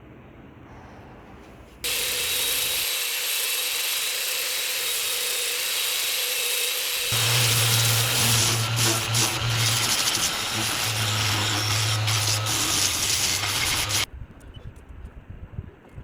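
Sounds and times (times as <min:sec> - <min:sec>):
angle grinder whining: 0:01.9 - 0:14.1.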